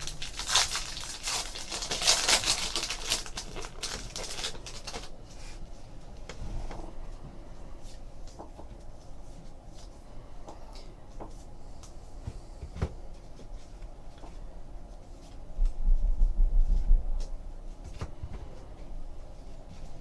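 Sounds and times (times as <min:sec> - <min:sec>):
low rumble of handling and bumping: 0:15.2 - 0:20.0.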